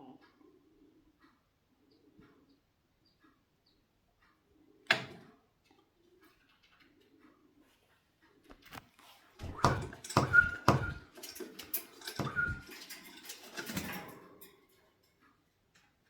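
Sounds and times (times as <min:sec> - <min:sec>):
thumps and rustling: 0:08.5 - 0:14.1.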